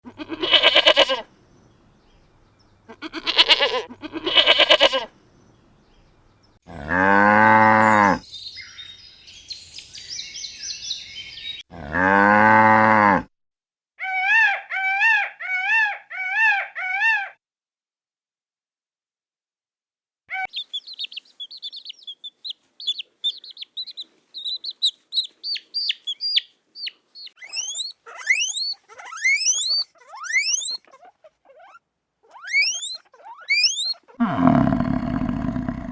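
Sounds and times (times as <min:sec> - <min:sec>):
sheep bleating: 0:00.1 - 0:01.3, 0:02.9 - 0:05.1
short high animal calls: 0:00.1 - 0:01.3, 0:02.9 - 0:05.1, 0:27.4 - 0:35.9
cow mooing: 0:06.7 - 0:08.2, 0:11.7 - 0:13.3, 0:34.2 - 0:35.9.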